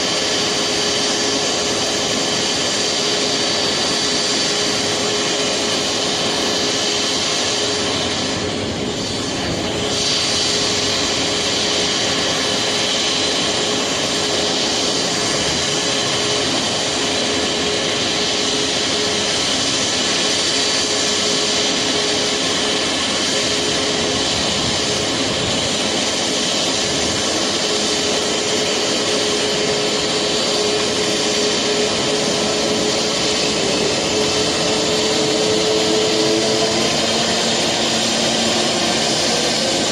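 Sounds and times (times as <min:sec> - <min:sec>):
jet engines whining: 0:00.0 - 0:39.9.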